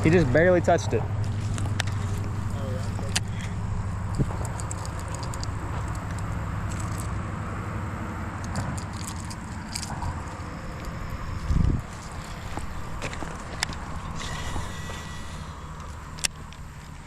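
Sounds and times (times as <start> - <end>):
steady low rumble: 0.0 - 17.0
small crackles and clicks: 4.1 - 7.2.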